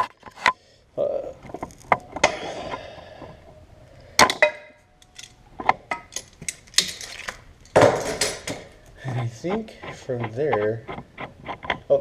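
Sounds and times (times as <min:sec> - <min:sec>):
metal tools clinking: 0:05.0 - 0:08.7.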